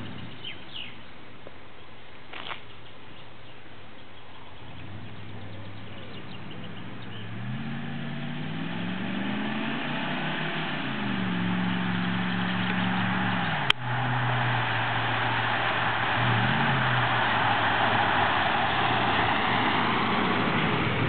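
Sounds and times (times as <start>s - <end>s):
truck engine revving: 4.8s - 21.0s
broad rushing noise: 8.7s - 21.0s.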